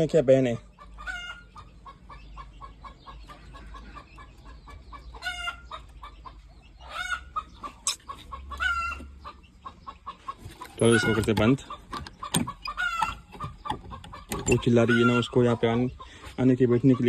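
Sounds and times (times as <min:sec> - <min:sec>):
chickens clucking: 0:00.0 - 0:17.0
chicken squawking calls: 0:06.8 - 0:09.2, 0:10.2 - 0:15.4.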